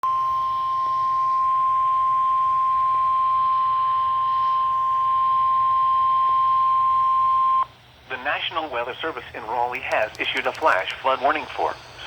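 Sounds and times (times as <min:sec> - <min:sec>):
steady warning alarm tone: 0:00.0 - 0:07.6.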